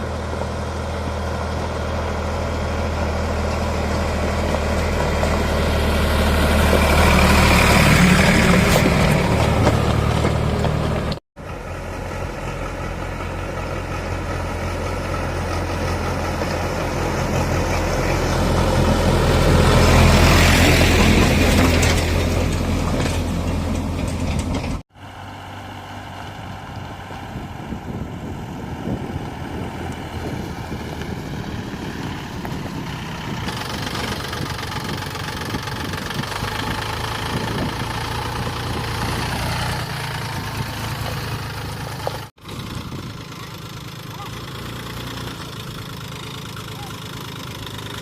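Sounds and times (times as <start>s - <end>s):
diesel engine running: 0.0s - 48.0s.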